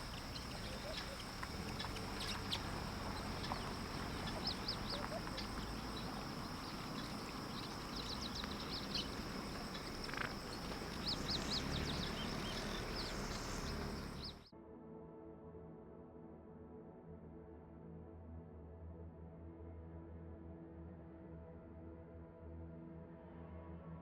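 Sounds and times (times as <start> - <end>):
birds chirping: 0.0 - 14.5
insect drone: 0.0 - 14.5.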